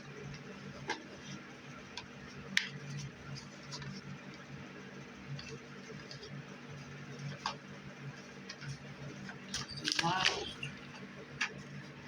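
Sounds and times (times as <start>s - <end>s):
low steady hum: 9.0s - 12.0s.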